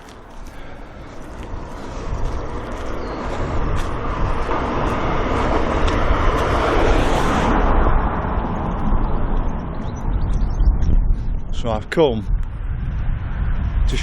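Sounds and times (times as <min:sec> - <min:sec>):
vehicle passing by: 0:01.2 - 0:10.2.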